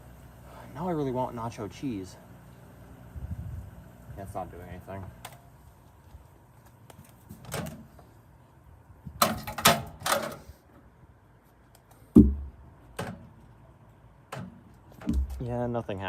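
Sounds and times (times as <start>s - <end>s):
sharp clicks and knocks: 9.2s - 10.4s, 14.3s - 15.5s
heavy thud: 12.1s - 12.6s.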